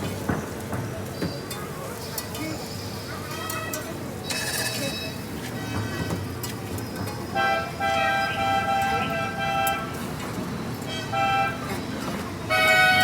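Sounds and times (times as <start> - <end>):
traffic rumble: 0.0 - 13.0
vehicle horn honking: 12.5 - 13.0.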